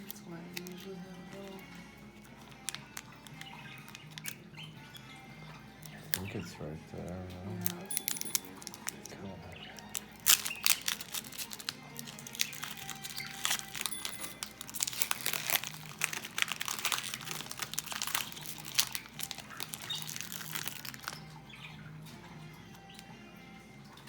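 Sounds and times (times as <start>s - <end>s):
foil wrapper tearing and crinkling: 0.0s - 1.6s, 2.2s - 4.4s, 7.5s - 9.1s, 9.8s - 21.3s.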